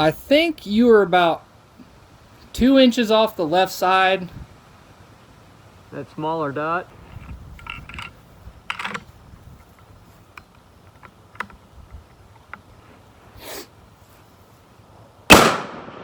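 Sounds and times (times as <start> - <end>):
brief rustle: 6.9 - 13.4
loud rifle shot: 15.3 - 16.0.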